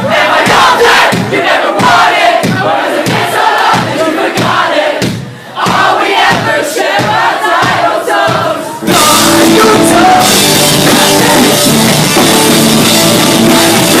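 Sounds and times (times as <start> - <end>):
crowd voices: 0.0 - 14.0
drums: 0.0 - 14.0
pop-punk band playing loudly: 0.0 - 14.0
person singing: 8.7 - 12.4
distorted guitars: 8.8 - 14.0.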